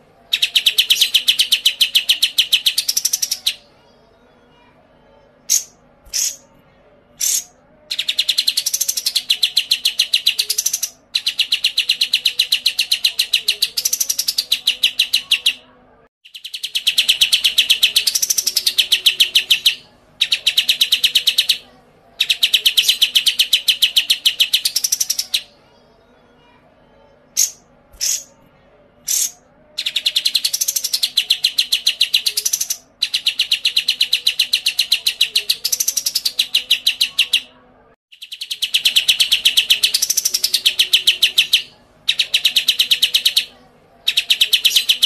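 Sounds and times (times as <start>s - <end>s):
bird sharp chips: 5.5s - 6.4s, 7.2s - 12.4s, 27.4s - 28.3s, 29.1s - 32.8s.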